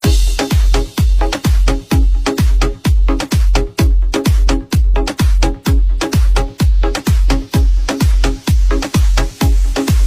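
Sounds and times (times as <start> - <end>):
heavy kick drum: 0.0 - 10.0.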